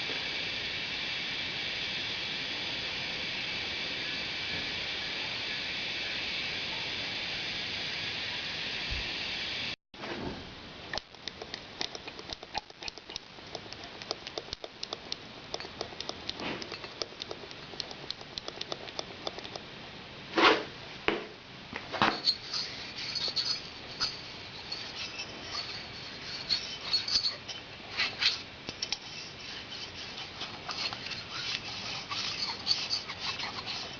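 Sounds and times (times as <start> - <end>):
scratching and scraping of hand work: 22.0 - 33.9.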